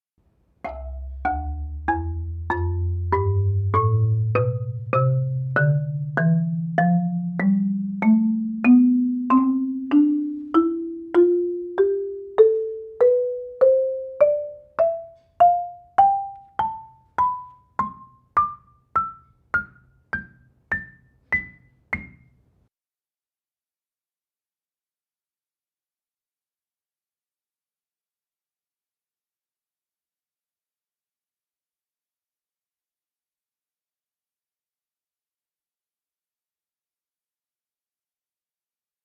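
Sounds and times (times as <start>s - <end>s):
marimba ascending scale: 0.7s - 22.3s.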